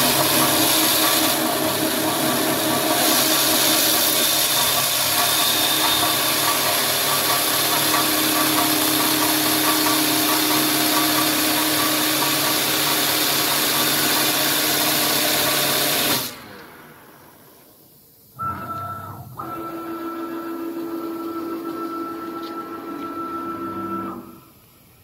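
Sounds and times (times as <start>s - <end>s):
wood lathe hissing: 0.0s - 16.4s.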